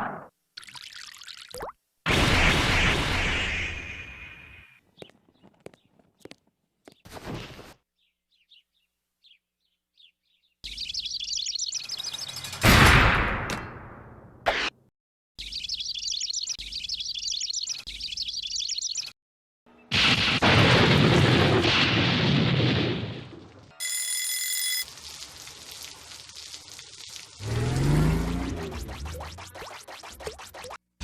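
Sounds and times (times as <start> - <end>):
rapid high twittering: 10.7 - 12.4.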